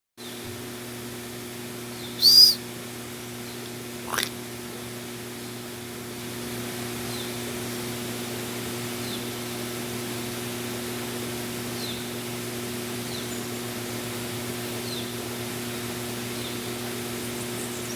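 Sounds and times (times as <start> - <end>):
arching bird call: 2.1 - 2.6
sharp bird chirp: 2.2 - 2.6.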